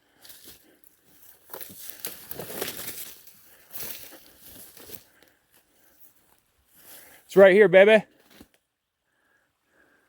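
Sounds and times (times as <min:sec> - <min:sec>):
footsteps through dry brush: 0:00.0 - 0:07.3, 0:08.1 - 0:08.6.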